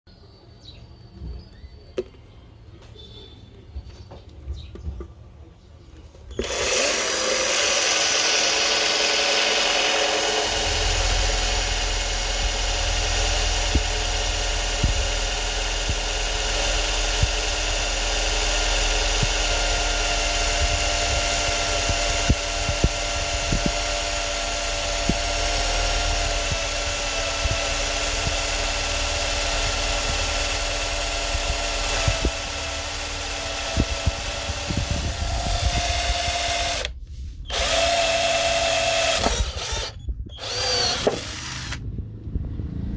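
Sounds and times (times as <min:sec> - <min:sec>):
table saw motor running: 0:06.4 - 0:41.8
deep rumble: 0:08.6 - 0:42.9.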